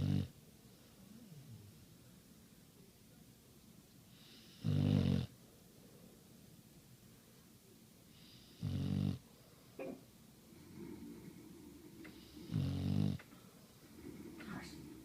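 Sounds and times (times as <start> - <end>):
person snoring: 10.7 - 13.2.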